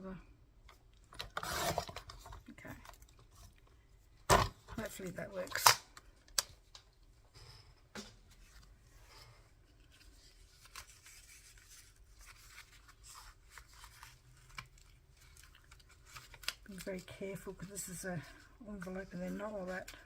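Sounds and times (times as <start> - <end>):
paper and card rustling: 8.3 - 20.0.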